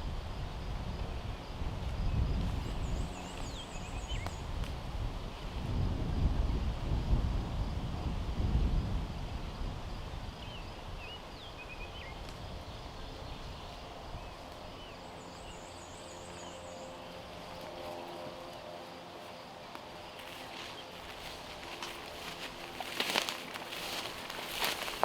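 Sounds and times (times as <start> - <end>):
wind buffeting microphone: 0.0 - 15.6
small birds chirping: 1.2 - 4.5, 10.4 - 17.9, 20.2 - 25.0.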